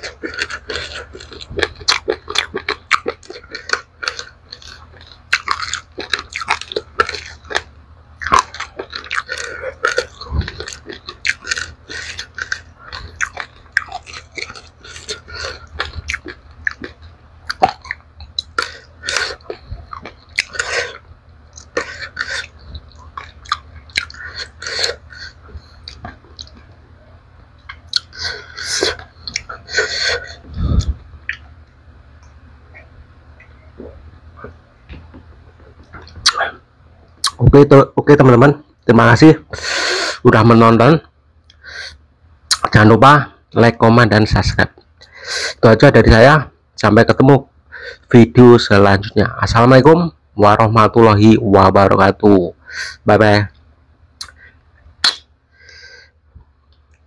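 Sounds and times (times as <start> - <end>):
crunchy chewing of rice grains: 0.0 - 36.6.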